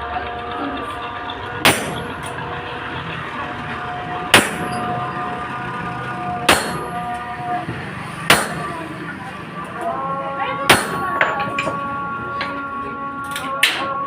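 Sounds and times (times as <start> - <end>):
steady background tone: 0.0 - 13.2
sharp metal clangs: 1.6 - 2.4, 4.3 - 5.1, 6.4 - 7.2, 8.2 - 8.8, 10.7 - 11.8.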